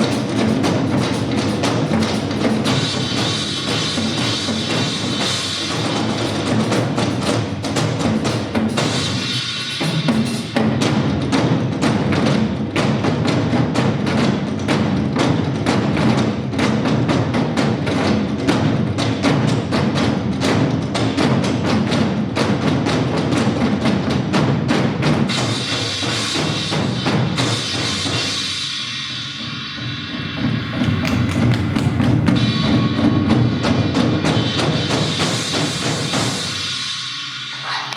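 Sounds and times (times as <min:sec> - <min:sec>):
ensemble drumming with sticks: 0:00.0 - 0:28.7, 0:29.3 - 0:37.9.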